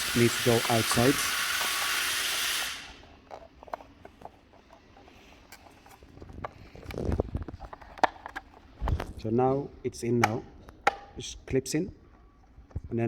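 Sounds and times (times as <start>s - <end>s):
heat gun blowing: 0.0s - 3.0s
plastic parts clicking: 5.5s - 8.6s.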